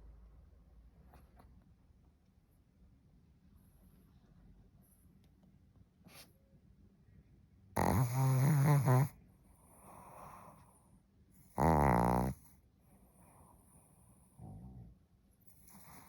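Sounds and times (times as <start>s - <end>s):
cat snoring: 7.8s - 10.6s, 11.4s - 12.6s, 15.5s - 16.0s.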